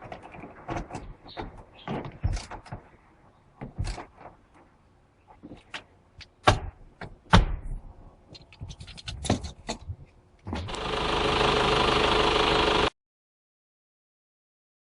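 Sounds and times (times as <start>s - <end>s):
diesel engine running: 10.7s - 12.9s.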